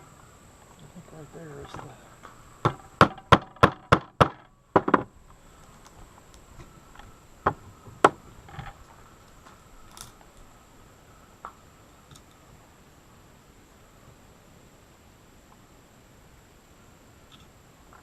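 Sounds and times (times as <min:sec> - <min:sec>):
sharp strikes on wooden board: 0:02.6 - 0:05.1.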